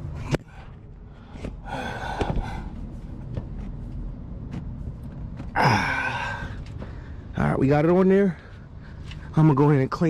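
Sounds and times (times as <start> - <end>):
man gasping: 1.4 - 2.7, 5.6 - 7.1.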